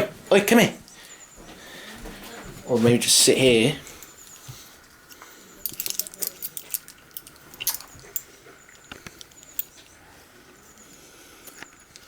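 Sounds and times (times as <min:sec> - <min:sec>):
dog lead clicking and rattling: 0:05.6 - 0:09.8.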